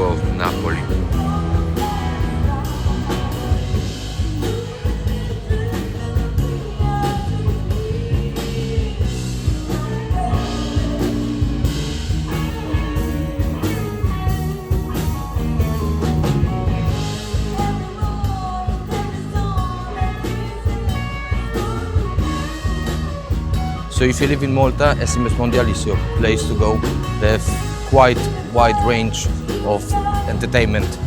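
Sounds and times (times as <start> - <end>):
rock song with singing: 0.0 - 31.0.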